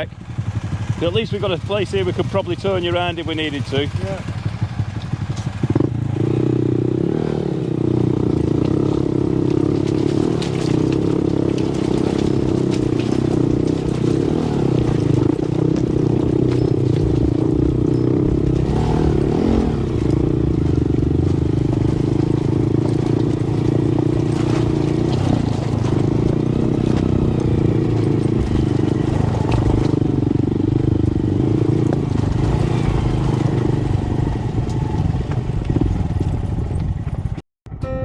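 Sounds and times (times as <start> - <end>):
motorcycle engine running: 0.0 - 38.0
knocks and rattles: 8.3 - 33.9.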